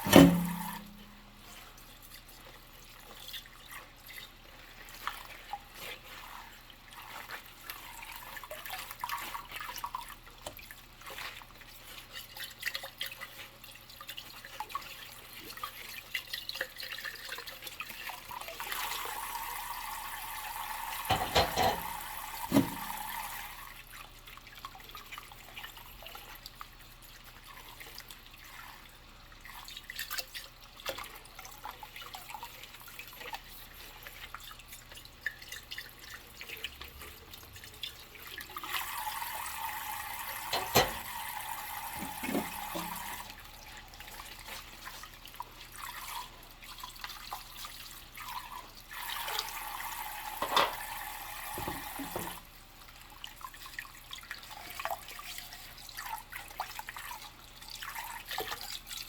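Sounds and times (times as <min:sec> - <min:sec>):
dish knocking against sink: 0:00.0 - 0:01.0, 0:21.1 - 0:22.9, 0:40.5 - 0:41.1, 0:41.9 - 0:43.0, 0:51.6 - 0:52.4
tap running: 0:00.0 - 0:01.0, 0:20.9 - 0:23.2, 0:39.3 - 0:43.4, 0:50.3 - 0:52.4
dishes clinking in a sink: 0:00.0 - 0:01.2, 0:20.9 - 0:23.0, 0:40.3 - 0:41.2, 0:41.8 - 0:43.2, 0:50.3 - 0:52.4.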